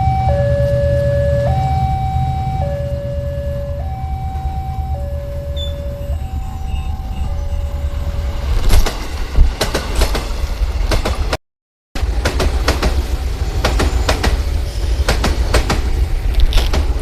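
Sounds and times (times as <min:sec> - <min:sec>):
level crossing two-tone siren: 0:00.0 - 0:08.6
train low rumble: 0:00.0 - 0:11.4, 0:12.0 - 0:17.0
train wheel clicks over rail joints: 0:08.6 - 0:11.4, 0:12.0 - 0:14.4, 0:15.0 - 0:17.0.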